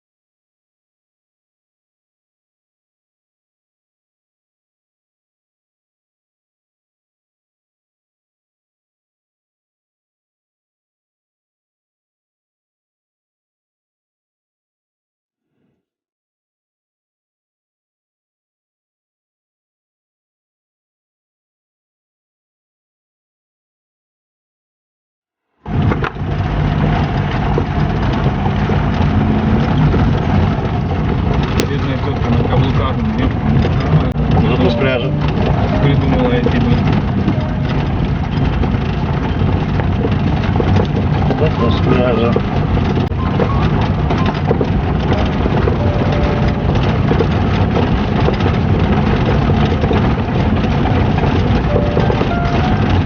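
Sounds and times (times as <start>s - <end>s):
engine rumbling: 25.6s - 53.0s.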